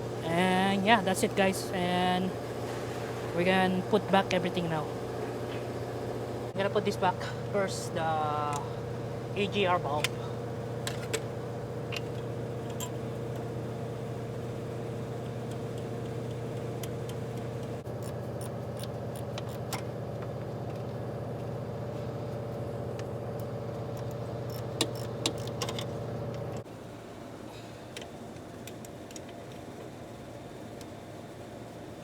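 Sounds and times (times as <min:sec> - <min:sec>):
mechanical hum: 0:00.0 - 0:32.0
metallic clicks of tools: 0:24.0 - 0:25.9.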